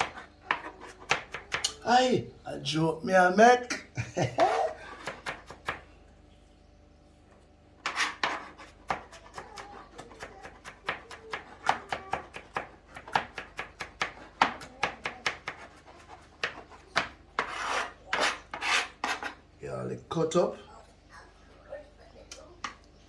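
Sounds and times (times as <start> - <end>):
knife chopping on cutting board: 0.0 - 1.7, 4.4 - 5.8, 7.8 - 19.4.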